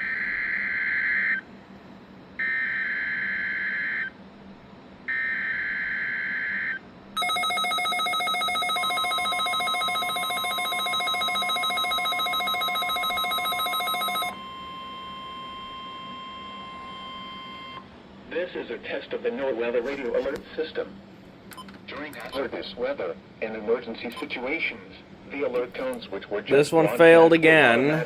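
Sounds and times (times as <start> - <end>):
pulsing many-toned alarm beep: 5.1 - 17.8.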